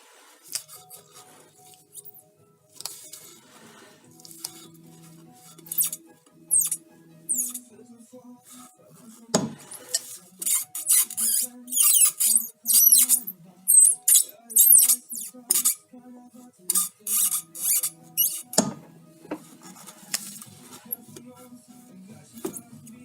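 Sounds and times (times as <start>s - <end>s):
universal joint squeaking: 5.4s - 7.7s, 9.4s - 15.8s, 16.7s - 21.1s.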